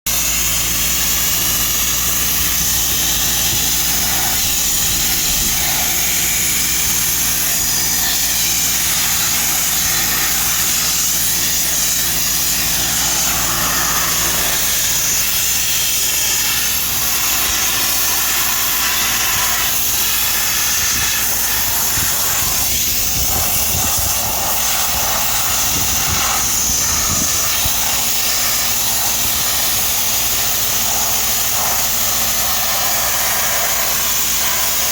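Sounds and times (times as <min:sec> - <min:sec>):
low machine hum: 0:00.1 - 0:18.5
sandblasting nozzle hiss: 0:00.1 - 0:34.9.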